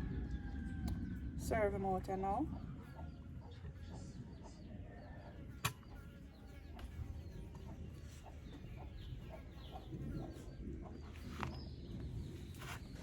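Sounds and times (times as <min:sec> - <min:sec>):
chickens clucking: 0:07.2 - 0:11.7.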